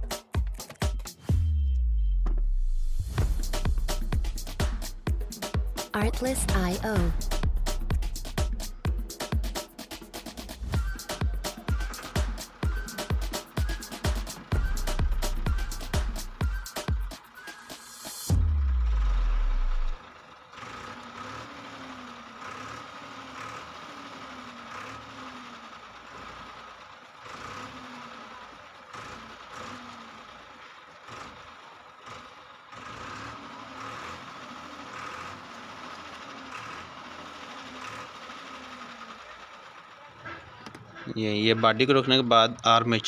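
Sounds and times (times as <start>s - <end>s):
scattered clicks and knocks: 0.0s - 1.3s.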